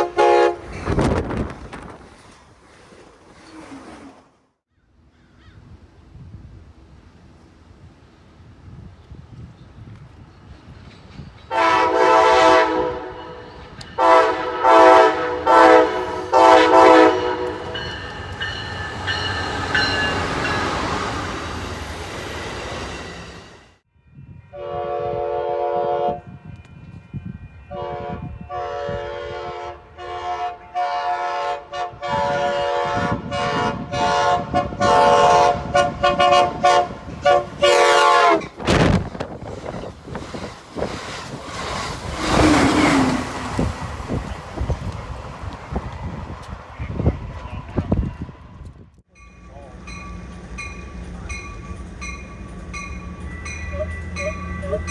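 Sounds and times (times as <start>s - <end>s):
locomotive horn blasts: 0.0s - 0.8s, 11.5s - 18.0s, 24.5s - 26.4s, 27.6s - 38.6s
train passing rumble: 0.0s - 4.5s, 5.6s - 54.9s.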